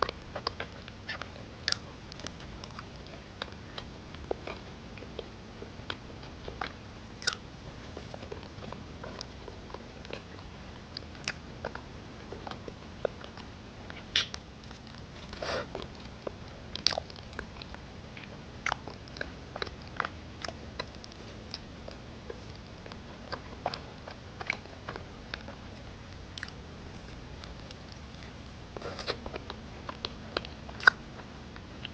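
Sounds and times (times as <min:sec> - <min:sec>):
chewing: 0:00.0 - 0:31.9
wet mouth clicks and smacks: 0:14.1 - 0:14.4.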